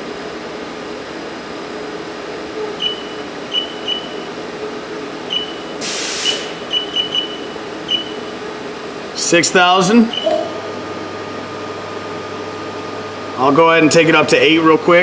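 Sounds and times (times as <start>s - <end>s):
machine spindle humming: 0.1s - 15.0s
brief hiss: 5.8s - 6.8s.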